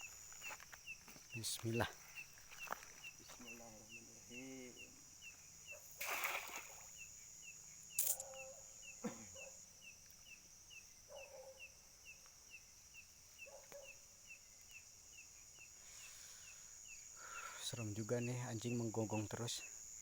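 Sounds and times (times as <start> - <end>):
insect chirping: 0.0 - 20.0
night insects whining: 0.0 - 20.0
distant dog barking: 8.2 - 9.7, 11.1 - 11.8, 13.4 - 14.0.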